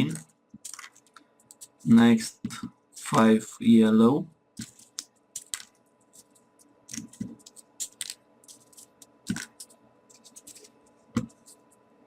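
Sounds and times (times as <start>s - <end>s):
paper rustling and clicking: 4.6s - 11.8s.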